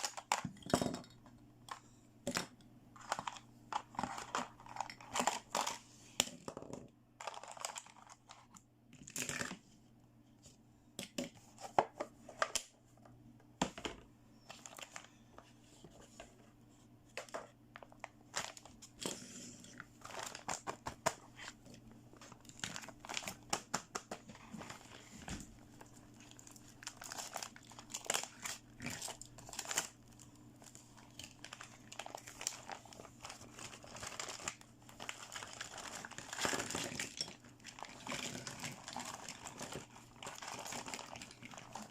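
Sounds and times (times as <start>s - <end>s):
packaging crinkling and tearing: 0.0s - 0.5s, 3.0s - 5.8s, 7.2s - 8.5s, 17.8s - 21.6s, 22.2s - 41.9s.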